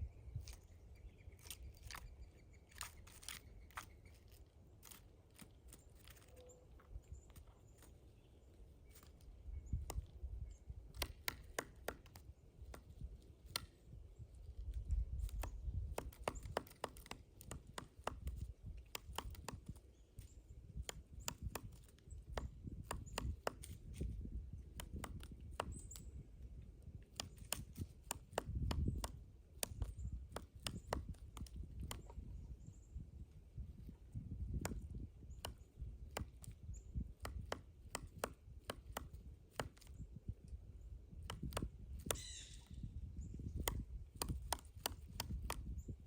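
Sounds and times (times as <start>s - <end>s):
woodpecker knocking on wood: 9.8s - 10.1s, 10.9s - 13.7s, 15.2s - 19.8s, 20.7s - 24.1s, 24.7s - 25.9s, 27.0s - 32.2s, 34.5s - 40.0s, 41.2s - 42.7s, 43.4s - 45.8s.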